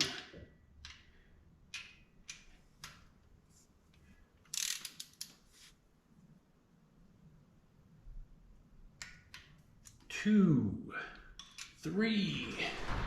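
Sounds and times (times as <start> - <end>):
ratchet wrench clicking: 4.5 - 5.3.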